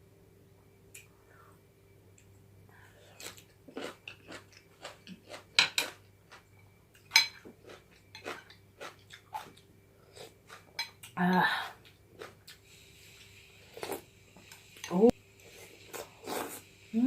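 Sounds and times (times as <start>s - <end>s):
chewing crunchy bones: 7.3s - 9.6s.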